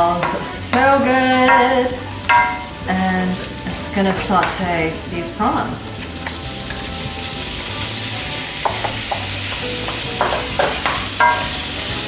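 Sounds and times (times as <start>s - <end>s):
prawns sizzling in hot oil: 0.0s - 12.0s
utensil scraping pan: 6.0s - 12.0s.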